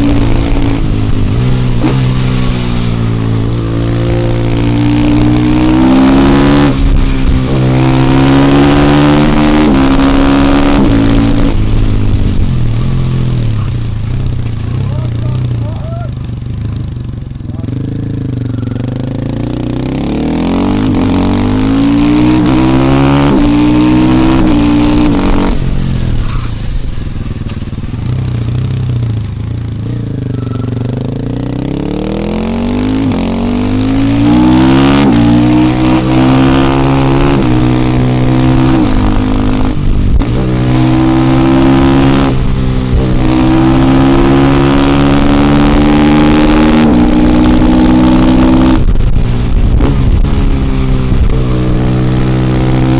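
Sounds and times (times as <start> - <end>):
motorcycle engine accelerating: 0.0 - 52.9.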